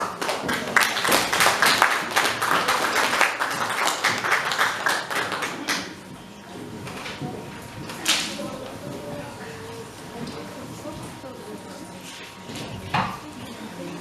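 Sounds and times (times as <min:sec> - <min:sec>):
audience applauding: 0:00.0 - 0:06.0.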